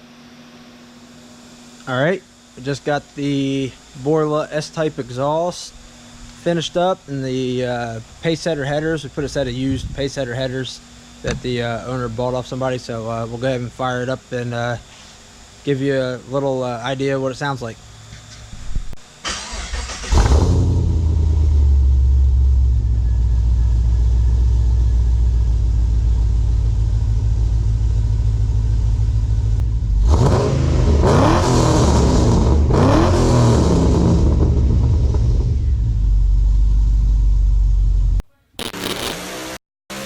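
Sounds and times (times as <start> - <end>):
car engine starting and idling: 19.2 - 38.2
engine revving: 19.3 - 23.0, 29.6 - 36.0, 38.6 - 40.0.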